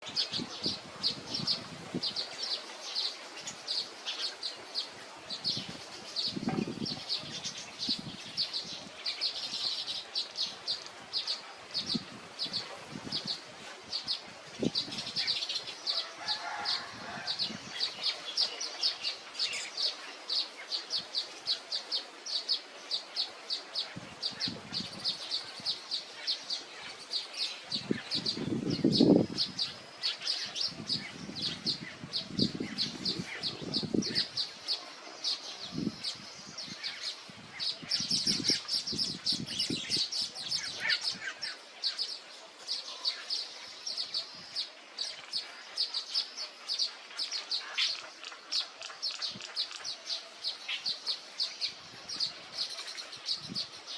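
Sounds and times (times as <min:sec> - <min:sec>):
small bird chirping: 0:23.8 - 0:53.9.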